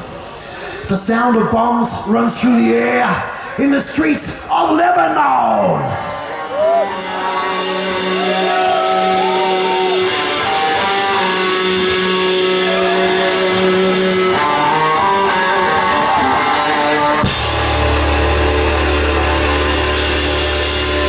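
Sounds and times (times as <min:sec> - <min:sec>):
live heavy metal band: 0:01.8 - 0:21.0
electric guitar lead notes: 0:05.6 - 0:21.0.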